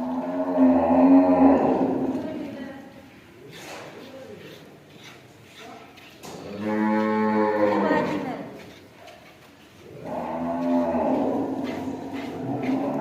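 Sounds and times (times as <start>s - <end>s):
cow mooing: 0.0s - 2.2s, 6.4s - 8.1s, 9.9s - 13.0s.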